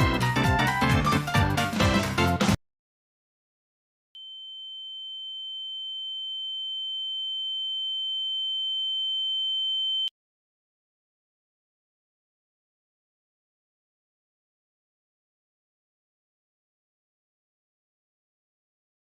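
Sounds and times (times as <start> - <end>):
music: 0.0 - 2.6.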